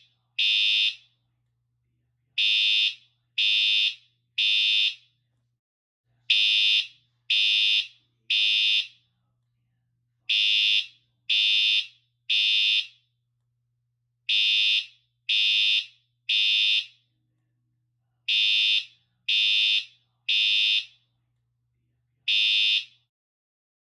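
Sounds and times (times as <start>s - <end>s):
fire alarm beeping: 0.4s - 1.2s, 2.4s - 5.2s, 6.3s - 9.0s, 10.3s - 13.0s, 14.3s - 17.0s, 18.3s - 21.0s, 22.3s - 23.1s.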